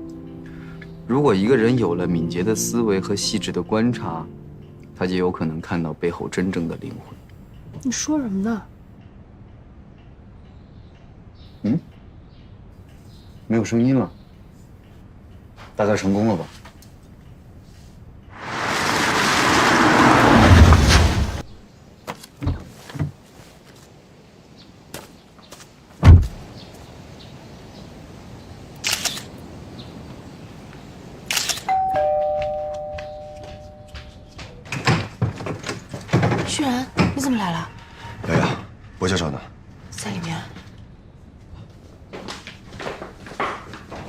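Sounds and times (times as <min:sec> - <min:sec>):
knocks and thuds: 0:26.0 - 0:26.4, 0:34.7 - 0:37.3
two-note doorbell chime: 0:31.7 - 0:34.4
footsteps walking: 0:32.0 - 0:36.6, 0:41.7 - 0:44.0.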